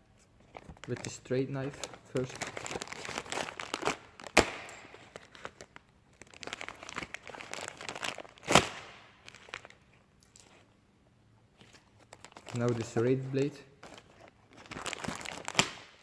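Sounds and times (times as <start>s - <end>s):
plastic cracking: 0.5s - 9.7s, 13.8s - 16.0s.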